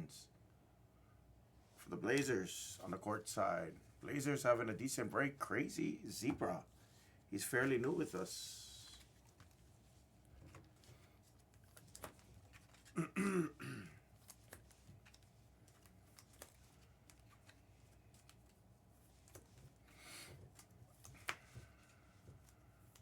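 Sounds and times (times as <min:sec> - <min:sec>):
cards clicking and rustling: 0:10.4 - 0:13.0, 0:14.2 - 0:23.0
person clearing throat: 0:12.9 - 0:14.0.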